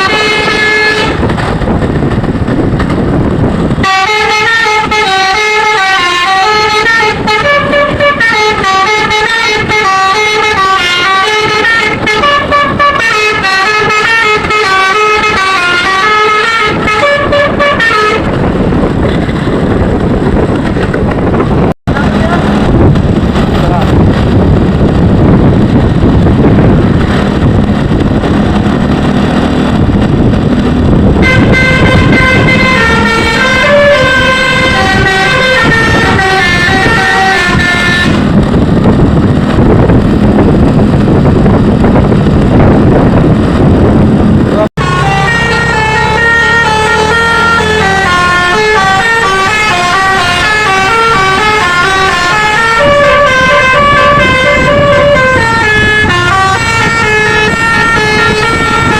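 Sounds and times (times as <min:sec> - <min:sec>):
multi-tone air horn melody: 0:00.0 - 0:01.2, 0:03.8 - 0:18.4, 0:31.2 - 0:38.4, 0:44.8 - 0:58.9
bus engine rumble: 0:00.0 - 0:58.9.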